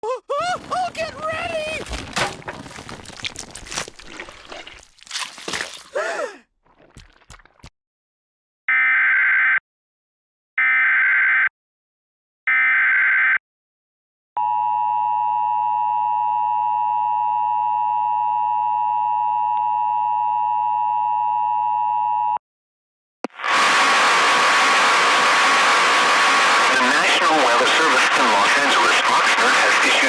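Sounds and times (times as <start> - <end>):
loud hiss: 23.3 - 28.0.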